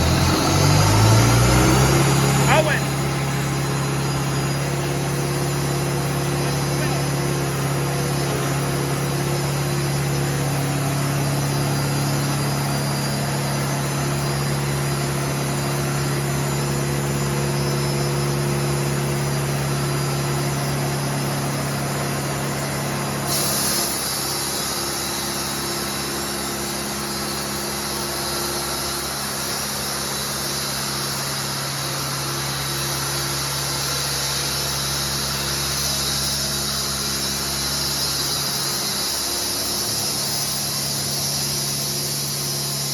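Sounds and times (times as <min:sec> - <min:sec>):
engine running steadily: 0:00.0 - 0:42.9
loud high hiss: 0:23.2 - 0:42.9.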